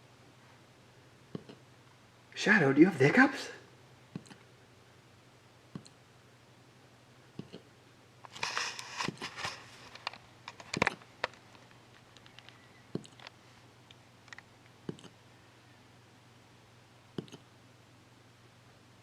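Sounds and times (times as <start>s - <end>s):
rustling: 8.3s - 13.7s.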